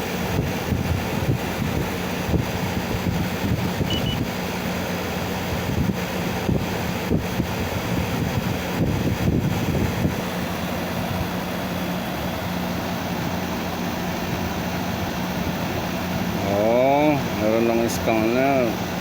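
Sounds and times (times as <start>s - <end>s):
air conditioner humming: 6.6s - 19.0s.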